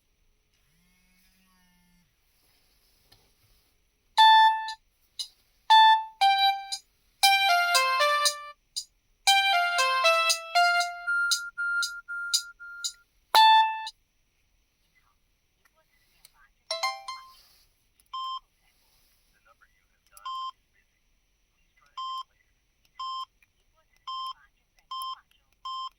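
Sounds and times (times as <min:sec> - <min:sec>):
bell-like phone ringtone: 0:04.2 - 0:04.8, 0:05.7 - 0:08.5, 0:09.3 - 0:13.9, 0:16.7 - 0:17.4.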